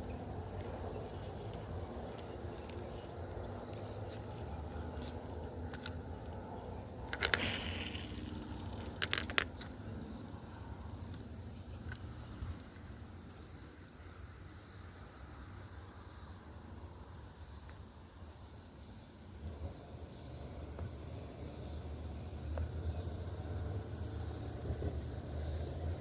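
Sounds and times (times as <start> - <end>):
low outdoor rumble: 0.0 - 14.4
rustle: 7.0 - 10.0.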